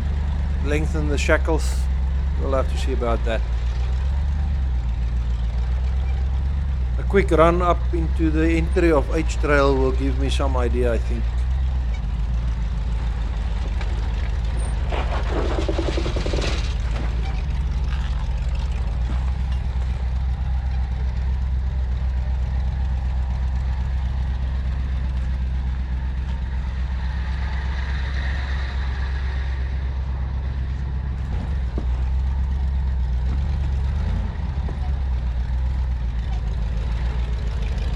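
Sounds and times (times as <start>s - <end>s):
jeep engine droning: 0.0s - 37.9s
rattling and clatter: 11.0s - 27.6s, 30.2s - 37.9s.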